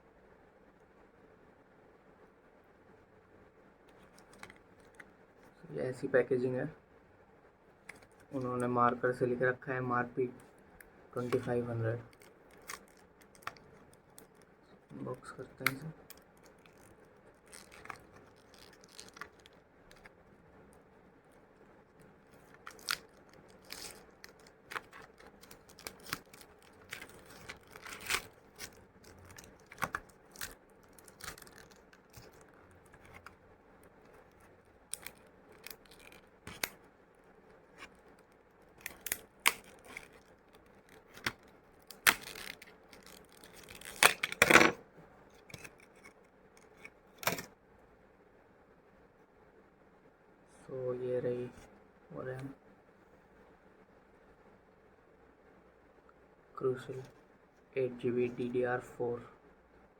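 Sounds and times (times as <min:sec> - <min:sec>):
plastic packaging crackling: 0:03.9 - 0:05.0, 0:10.2 - 0:36.9, 0:37.7 - 0:44.5.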